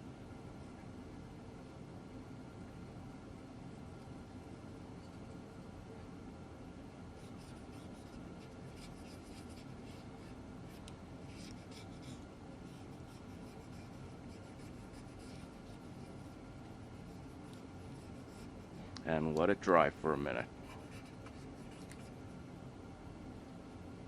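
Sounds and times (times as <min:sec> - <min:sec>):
steady low hum: 0:00.0 - 0:24.0
felt tip scratching on plastic: 0:07.2 - 0:18.6, 0:20.6 - 0:22.2.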